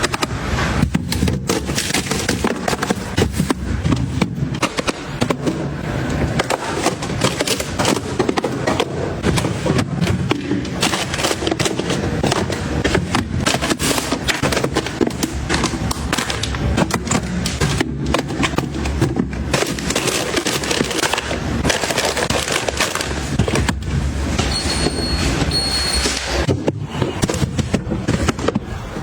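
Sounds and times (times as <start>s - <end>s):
packaging clicks knocks and crinkling: 0.0s - 24.6s
short high electronic beeps: 24.5s - 26.2s.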